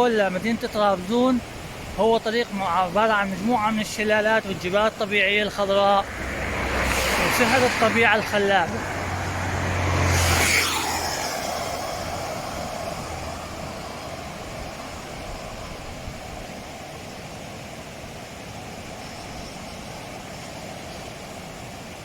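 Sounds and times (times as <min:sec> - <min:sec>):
steady rushing noise: 0:00.0 - 0:22.0
vehicle passing by: 0:05.7 - 0:15.9.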